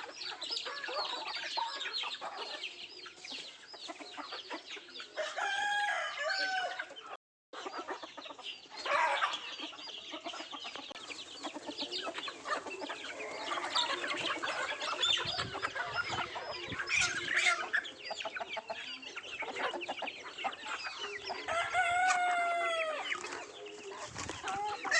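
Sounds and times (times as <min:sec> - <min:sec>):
chickens clucking: 0:00.0 - 0:24.9
drawn-out chicken call: 0:03.9 - 0:07.2, 0:08.8 - 0:24.9.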